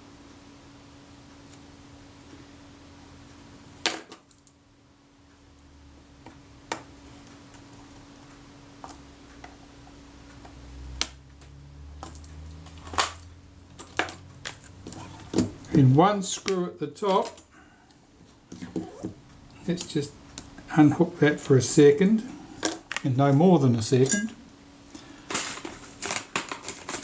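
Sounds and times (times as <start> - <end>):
faint steady hum: 0.0 - 27.0
metal tools clicking on metal: 24.0 - 24.4.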